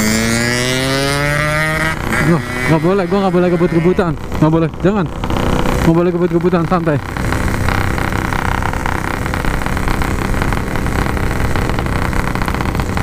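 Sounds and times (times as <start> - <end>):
two-stroke motorcycle engine cruising: 0.0 - 13.0.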